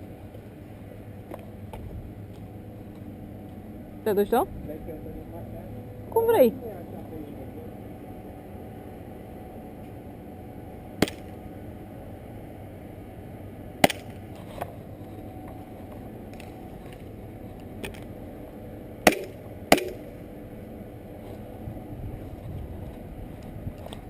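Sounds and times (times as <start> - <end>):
airsoft gun shots: 19.0 - 20.1.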